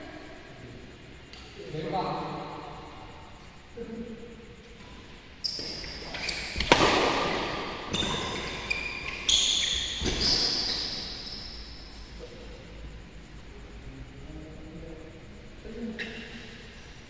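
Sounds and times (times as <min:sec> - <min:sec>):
shoes squeaking on court floor: 0:04.6 - 0:12.2, 0:15.8 - 0:17.0
racket hitting shuttlecock: 0:06.1 - 0:10.3.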